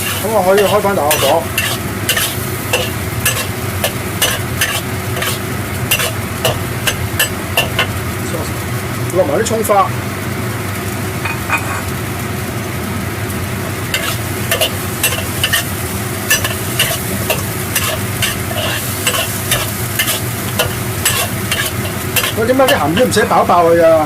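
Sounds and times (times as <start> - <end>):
spatula scraping a wok: 0.0 - 8.0, 13.9 - 23.3
food sizzling in a wok: 0.0 - 24.0
steady low hum: 12.7 - 23.3.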